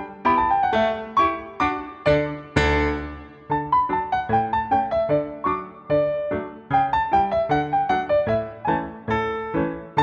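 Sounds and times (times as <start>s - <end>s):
piano music: 0.0s - 10.0s.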